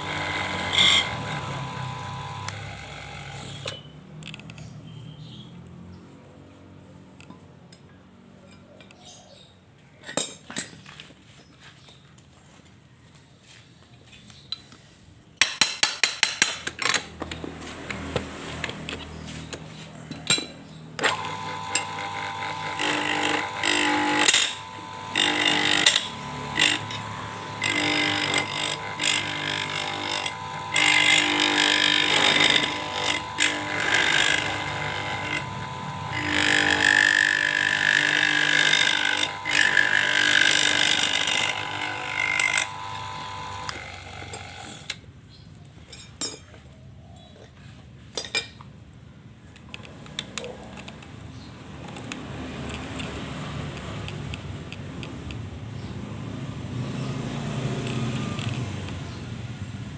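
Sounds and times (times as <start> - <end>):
lathe motor whine: 0.0 - 3.8, 21.0 - 44.9
cutting tool scraping pipe: 0.0 - 3.9, 17.0 - 45.0.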